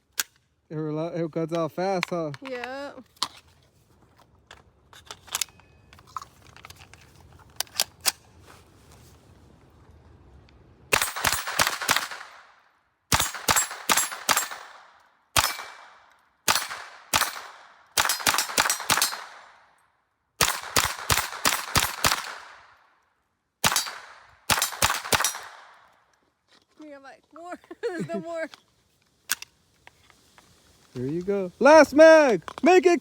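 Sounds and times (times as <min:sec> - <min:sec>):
rapid gunshots: 0:10.9 - 0:12.3, 0:16.5 - 0:19.5, 0:20.4 - 0:22.6, 0:23.6 - 0:25.7.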